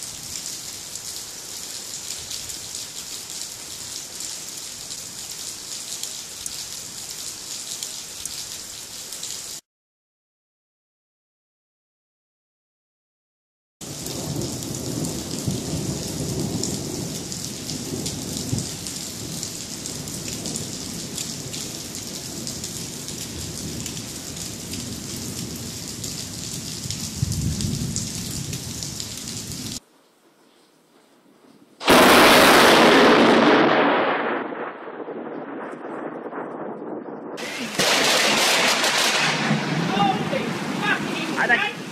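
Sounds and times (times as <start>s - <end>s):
rain falling: 0.0s - 9.6s, 13.8s - 30.4s, 31.8s - 36.7s, 37.4s - 41.9s
loud thunderclap: 13.9s - 19.3s, 27.1s - 28.6s, 31.8s - 41.9s
low thunder rumbling: 13.9s - 29.8s, 31.8s - 41.9s.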